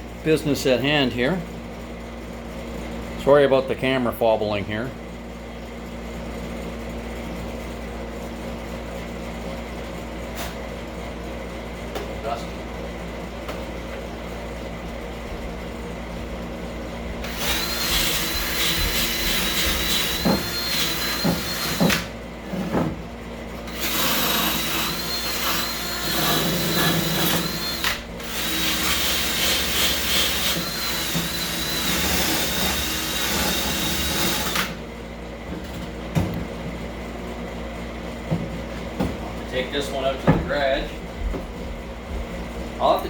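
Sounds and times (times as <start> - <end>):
power tool motor whine: 17.2 - 22.1, 23.7 - 34.8.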